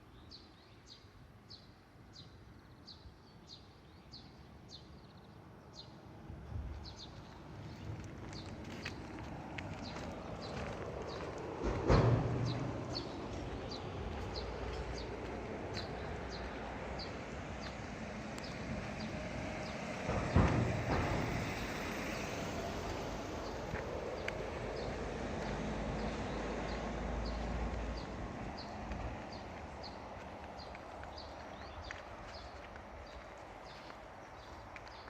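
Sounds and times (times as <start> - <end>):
footsteps walking: 6.7 - 35.0
loud thump: 11.6 - 13.2, 20.0 - 21.8.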